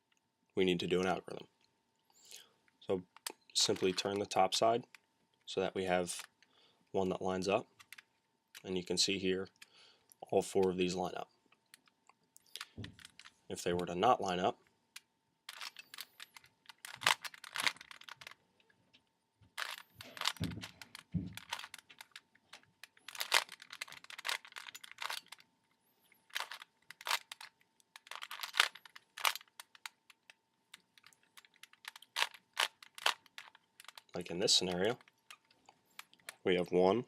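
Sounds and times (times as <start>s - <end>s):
puzzle cube layers clicking: 15.5s - 18.4s, 19.6s - 25.4s, 26.3s - 34.1s.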